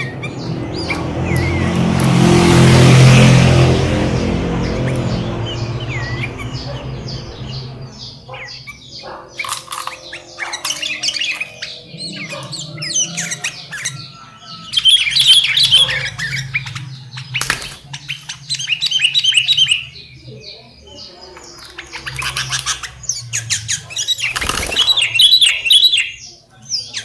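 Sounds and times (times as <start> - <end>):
bulbuls chirping and calling: 0.0 - 27.0
low rumble: 0.1 - 8.7.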